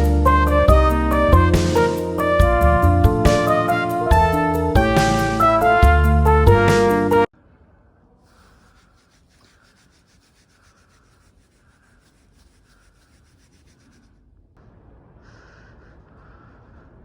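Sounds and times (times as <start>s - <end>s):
pen scratching on paper: 8.3s - 14.2s.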